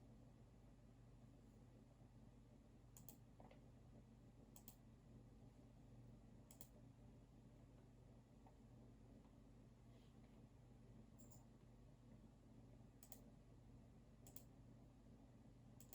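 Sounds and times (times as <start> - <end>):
low room hum: 0.0 - 15.9
computer mouse clicks: 3.0 - 3.6, 4.5 - 4.8, 6.5 - 6.8, 11.2 - 11.4, 13.0 - 13.3, 14.2 - 14.5.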